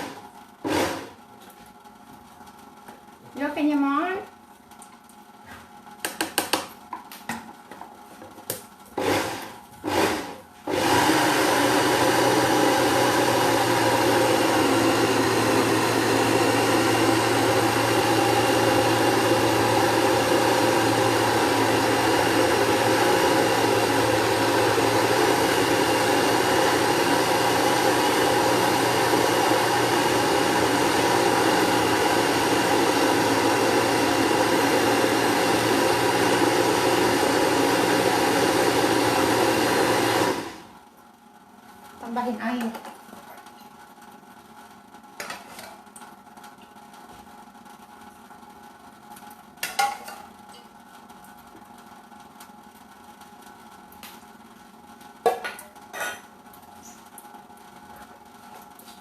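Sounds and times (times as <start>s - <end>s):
electric blender grinding: 0.0s - 1.2s, 9.0s - 40.7s.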